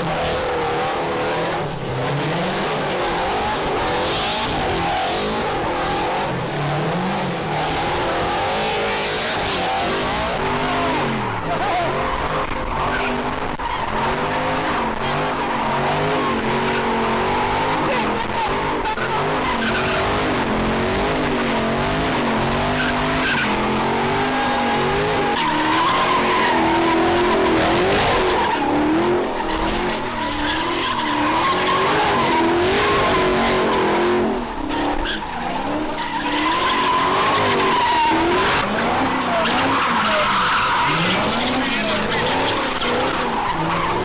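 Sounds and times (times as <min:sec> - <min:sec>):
car engine revving hard: 0:00.0 - 0:44.0
tyres squealing: 0:22.3 - 0:44.0.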